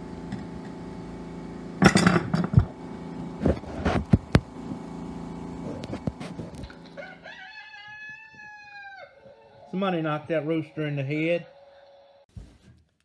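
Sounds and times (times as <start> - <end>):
steady hum: 0.0 - 7.3.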